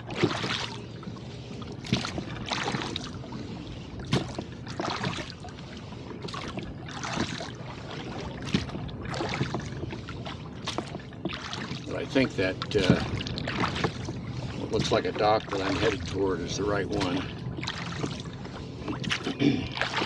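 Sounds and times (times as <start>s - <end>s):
sharp knocks on a boat: 0.0s - 0.8s, 1.8s - 3.1s, 4.0s - 5.4s, 8.4s - 10.0s, 10.6s - 20.0s
water slapping against a hull: 0.0s - 20.0s.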